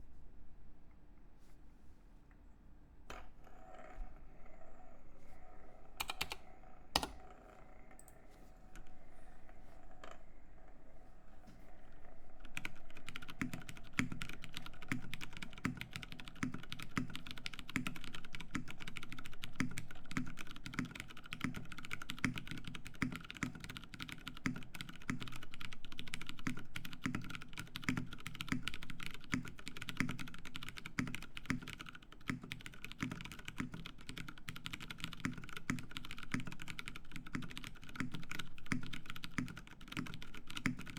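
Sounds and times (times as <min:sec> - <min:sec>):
mechanical keyboard typing: 0:06.0 - 0:07.4, 0:12.3 - 0:40.9.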